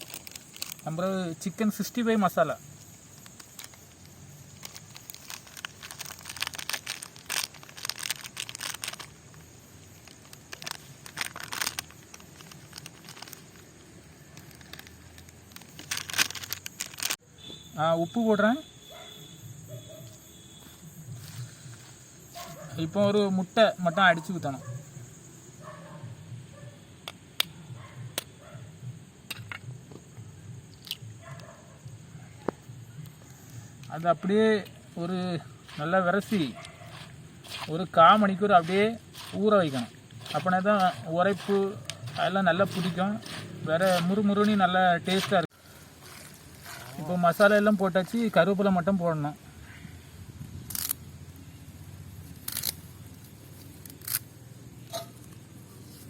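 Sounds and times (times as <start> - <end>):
plastic packet crinkling: 0.0 - 1.1, 3.2 - 9.4, 10.0 - 13.7, 14.3 - 17.2.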